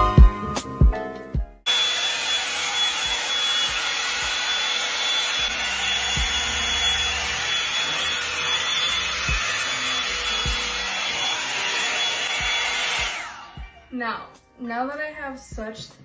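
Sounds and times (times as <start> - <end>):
hot-air brush dryer running: 1.7 - 13.9.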